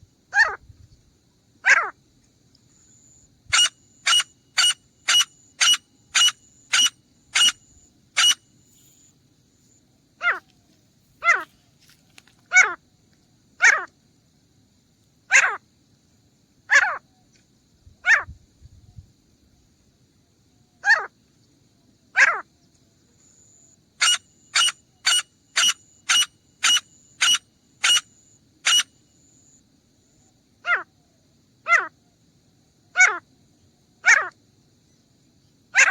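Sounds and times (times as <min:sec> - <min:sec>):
francolin calling: 0:02.7 - 0:09.1, 0:23.3 - 0:29.6.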